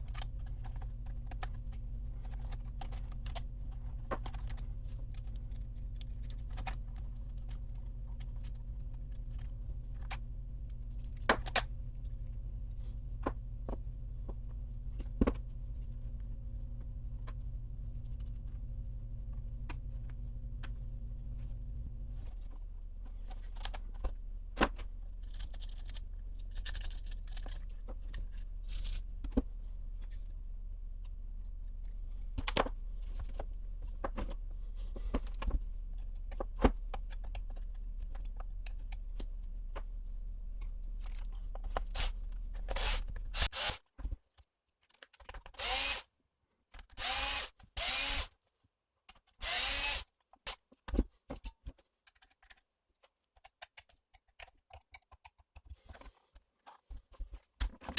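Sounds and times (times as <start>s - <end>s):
steady low hum: 0.0s - 43.5s
power driver whirring: 41.7s - 43.8s, 45.6s - 46.0s, 47.0s - 48.3s, 49.4s - 50.0s.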